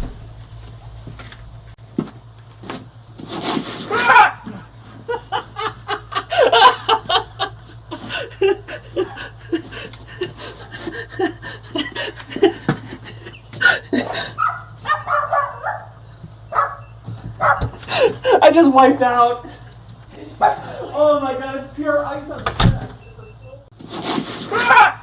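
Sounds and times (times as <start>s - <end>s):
man laughing: 4.5s - 14.4s, 17.8s - 18.5s.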